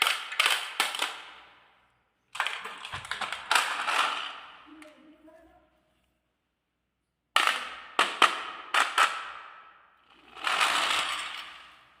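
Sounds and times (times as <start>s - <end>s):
marbles clacking on wooden run: 2.3s - 4.9s, 10.1s - 11.9s
marbles rolling down track: 2.4s - 4.6s, 10.0s - 12.0s.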